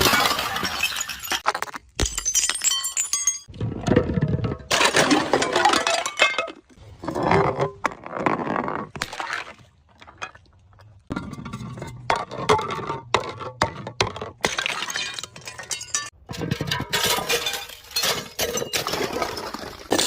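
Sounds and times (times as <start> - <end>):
broken glass crunching: 0.0 - 3.5
glass bottles shattering: 0.0 - 3.5, 4.6 - 6.7, 14.4 - 20.0.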